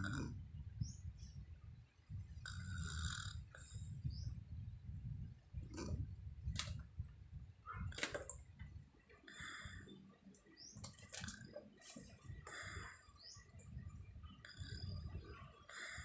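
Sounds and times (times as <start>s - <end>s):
woman snoring: 2.5s - 3.5s.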